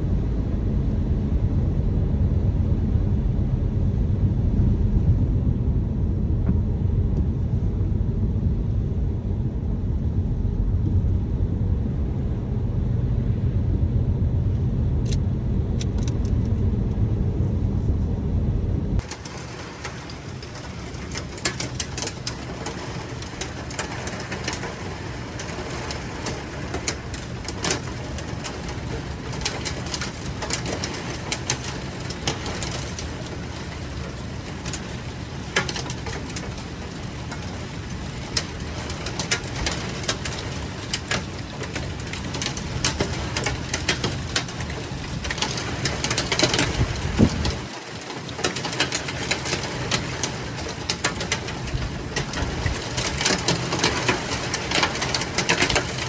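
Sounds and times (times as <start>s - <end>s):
low drone of road and engine: 0.0s - 56.0s
rain ticking on a car: 19.0s - 56.0s.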